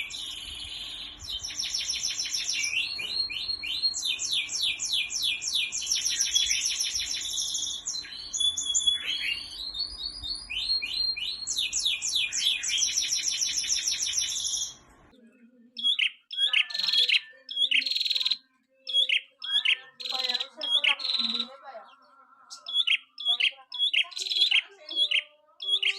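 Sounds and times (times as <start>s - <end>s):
songbird trilling: 0.0s - 14.8s, 15.8s - 25.9s.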